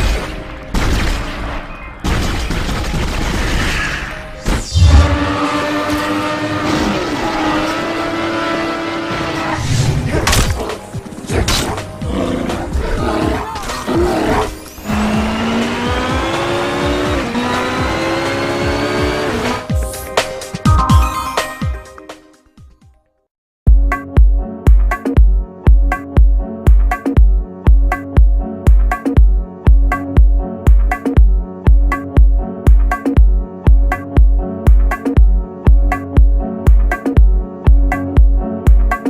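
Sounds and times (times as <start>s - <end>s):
long rising tone: 4.7s - 9.1s.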